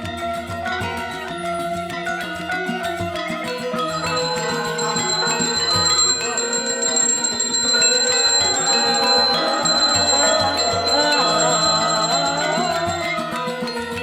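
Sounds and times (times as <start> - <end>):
gamelan music: 0.0 - 14.0
hand bell ringing: 3.7 - 14.0.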